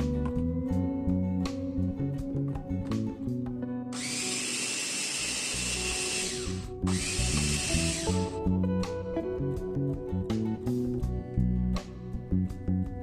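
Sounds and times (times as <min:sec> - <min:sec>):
guitar music: 0:00.0 - 0:13.0
kitchen appliance motor whine: 0:03.9 - 0:08.4.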